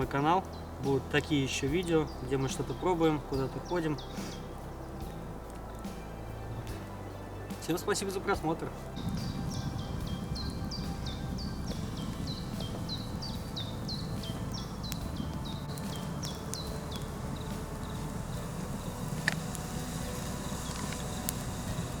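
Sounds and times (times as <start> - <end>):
steady low rumble: 0.0 - 7.5, 8.3 - 22.0.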